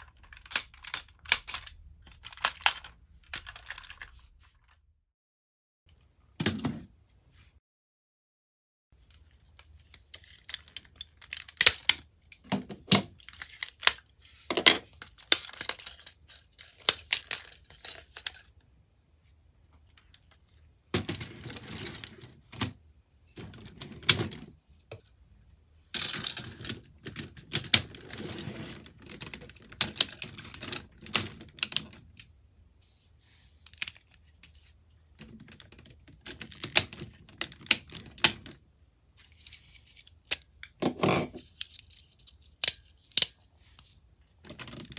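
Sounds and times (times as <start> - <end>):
plastic toy parts clicking: 0.0 - 4.8, 9.9 - 14.0, 14.9 - 18.5, 39.4 - 43.4.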